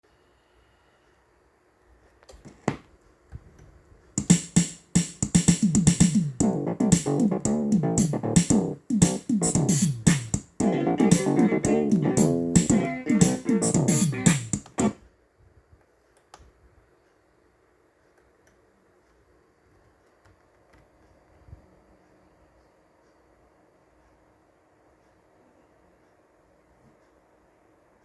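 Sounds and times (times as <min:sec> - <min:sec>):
drum machine beat with keyboard: 0:04.2 - 0:15.0.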